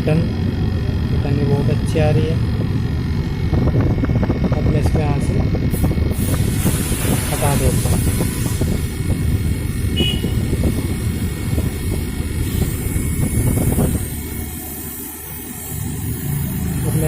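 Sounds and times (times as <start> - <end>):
air conditioner drone: 0.0 - 17.0.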